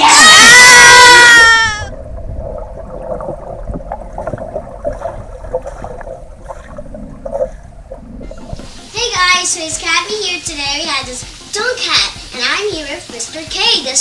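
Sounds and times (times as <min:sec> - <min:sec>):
water gurgling and sloshing: 0:01.9 - 0:14.0.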